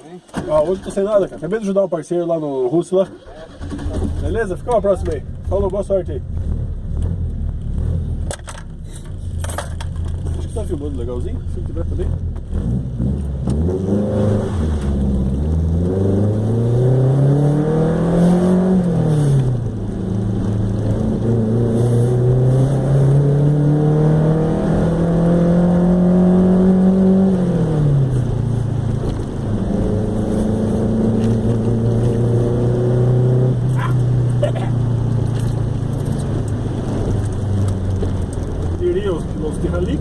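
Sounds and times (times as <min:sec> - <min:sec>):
car engine pulling hard: 0:03.0 - 0:40.0.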